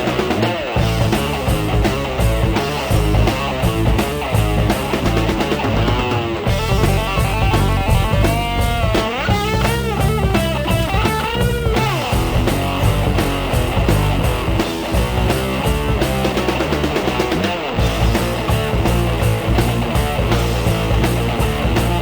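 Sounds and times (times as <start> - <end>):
rock music with guitar: 0.0 - 22.0.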